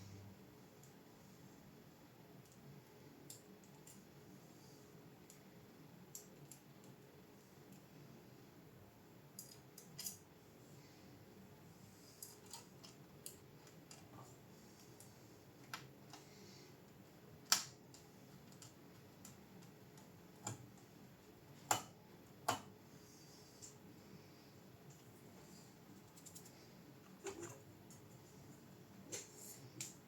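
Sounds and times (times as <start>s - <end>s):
faint steady background noise: 0.0s - 30.0s.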